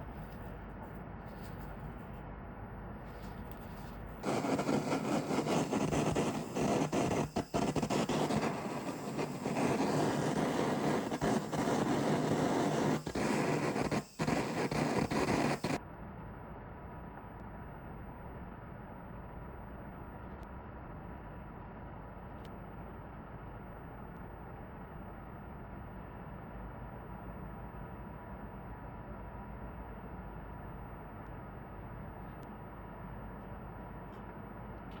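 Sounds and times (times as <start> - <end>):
kitchen appliance motor running: 4.2 - 15.8.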